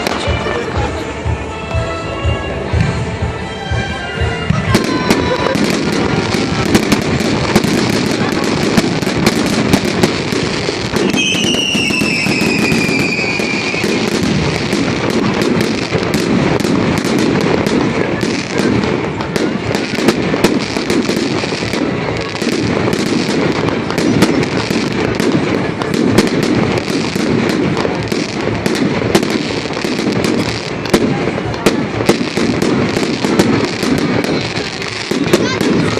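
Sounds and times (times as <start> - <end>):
fireworks crackling and popping: 0.0 - 1.9, 2.7 - 35.9
falling firework whistle: 10.9 - 14.8.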